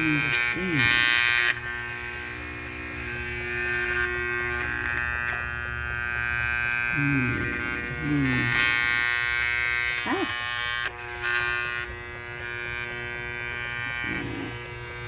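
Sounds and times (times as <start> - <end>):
electric hand mixer motor buzzing: 0.0 - 15.0.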